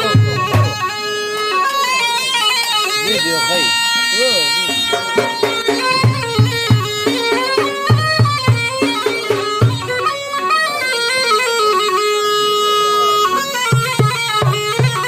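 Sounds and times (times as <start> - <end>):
hand drum beats: 0.0 - 1.0, 4.6 - 10.2, 13.6 - 15.0
bagpipe melody: 0.0 - 15.0.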